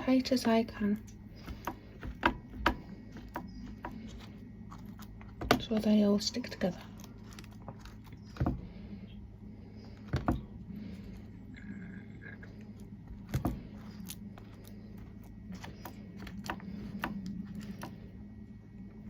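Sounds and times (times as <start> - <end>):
steady low hum: 0.0 - 19.0
utensil clicking and tapping: 1.0 - 6.0, 13.2 - 18.0.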